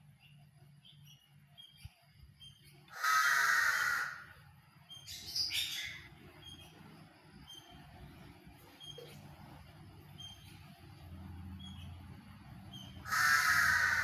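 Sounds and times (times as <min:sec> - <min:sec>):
faint bird chirps: 0:00.0 - 0:02.9, 0:04.3 - 0:13.0
bird harsh squawk: 0:02.9 - 0:04.3, 0:13.0 - 0:14.0.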